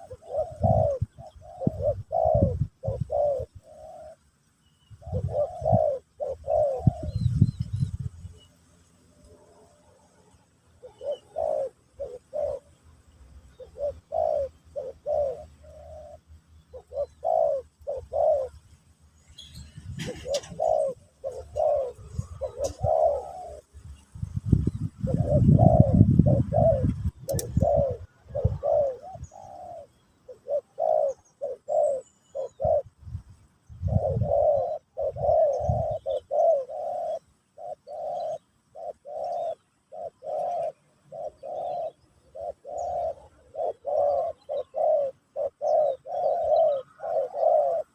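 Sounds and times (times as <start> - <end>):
doves cooing: 0.0 - 8.4, 9.1 - 47.9
sharp click: 27.1 - 27.6.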